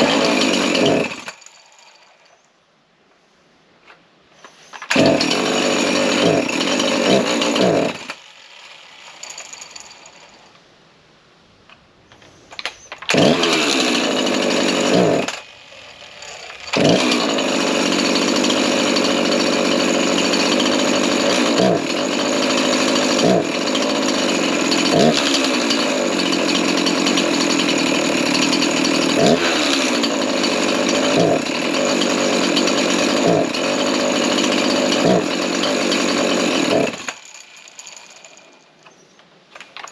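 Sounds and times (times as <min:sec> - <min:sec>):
chainsaw running at high revs: 0:00.0 - 0:02.0, 0:04.9 - 0:10.4, 0:13.1 - 0:38.6.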